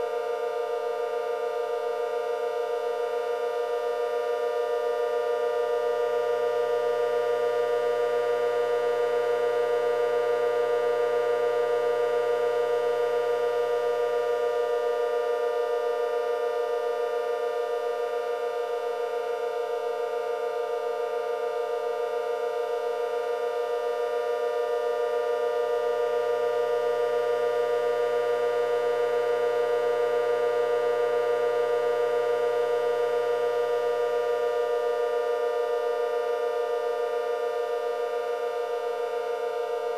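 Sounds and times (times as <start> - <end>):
warning siren steady chord: 0.0 - 39.9.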